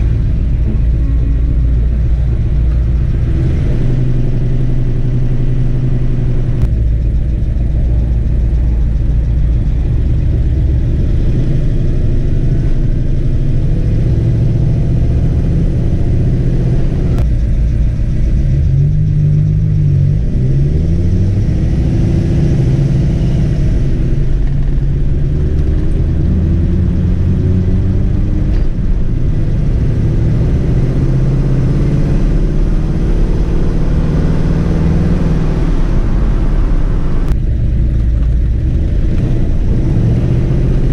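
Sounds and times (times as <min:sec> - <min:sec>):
car engine revving: 0:00.0 - 0:40.9.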